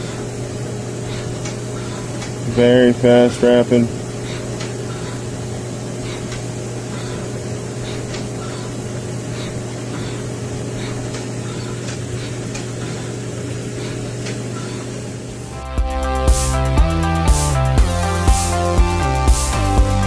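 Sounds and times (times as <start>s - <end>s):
lathe machine hum and hiss: 0.0s - 15.6s.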